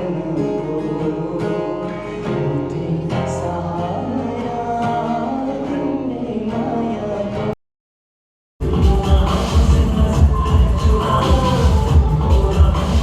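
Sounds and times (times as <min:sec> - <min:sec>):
person singing: 0:00.0 - 0:07.6, 0:08.6 - 0:13.0.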